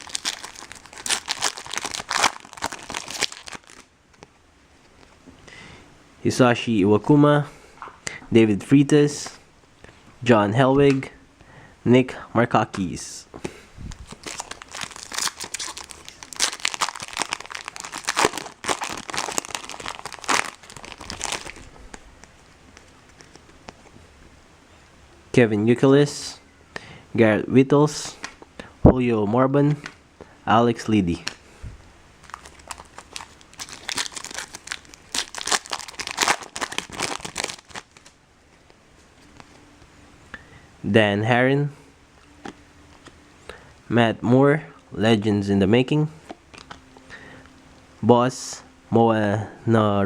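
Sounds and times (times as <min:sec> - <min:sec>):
card pack wrapper crinkling: 0:00.0 - 0:03.9, 0:13.9 - 0:23.8, 0:32.2 - 0:38.2.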